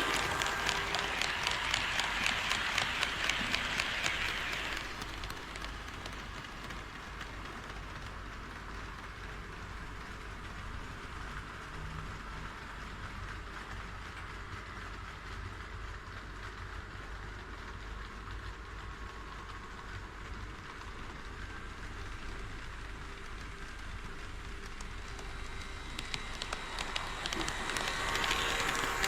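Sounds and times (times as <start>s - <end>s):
model train rolling on rails: 0.0s - 29.0s.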